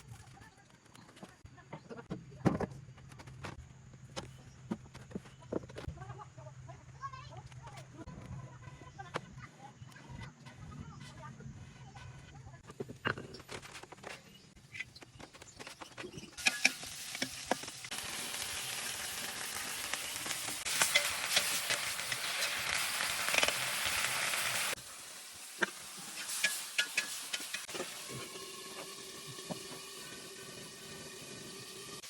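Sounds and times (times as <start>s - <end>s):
food sizzling in hot oil: 15.6s - 32.0s
stirring clicks and scrapes: 20.2s - 24.6s.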